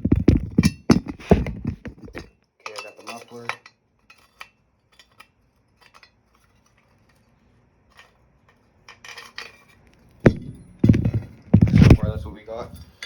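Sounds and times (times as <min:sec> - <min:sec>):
metal parts clinking: 0:08.9 - 0:13.0
loud knocks: 0:10.3 - 0:12.9.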